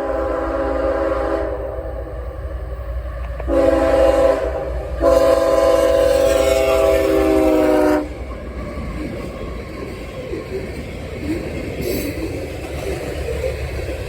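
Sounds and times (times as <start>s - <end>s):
locomotive air horn blasts: 0.0s - 1.9s, 3.5s - 8.1s
train rumbling: 0.0s - 14.0s.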